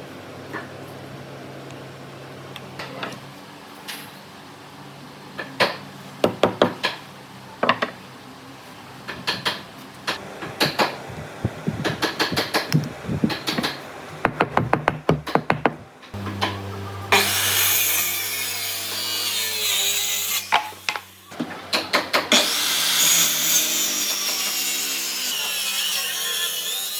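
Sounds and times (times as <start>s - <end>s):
wood knocks and taps: 13.3s - 15.9s.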